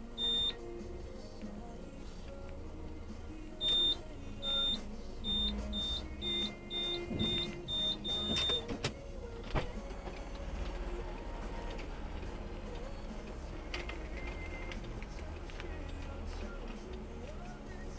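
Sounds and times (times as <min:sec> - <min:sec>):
short high-pitched beeps: 0:00.2 - 0:00.6, 0:03.6 - 0:08.7.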